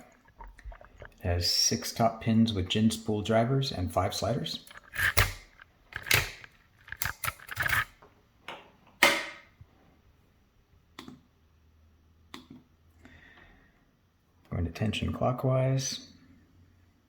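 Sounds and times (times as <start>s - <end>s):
metal lockpicking tools clicking: 4.7s - 7.9s.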